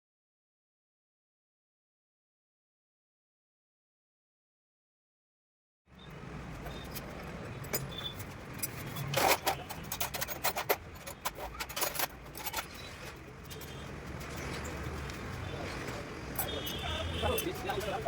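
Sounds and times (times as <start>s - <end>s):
metal parts clinking and scraping: 6.4s - 18.0s.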